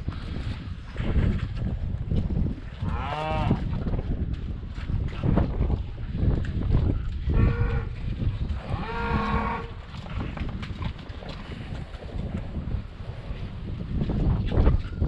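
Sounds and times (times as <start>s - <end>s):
wind buffeting microphone: 0.0s - 15.0s
cattle mooing: 2.8s - 3.6s, 7.3s - 7.9s, 8.6s - 9.8s.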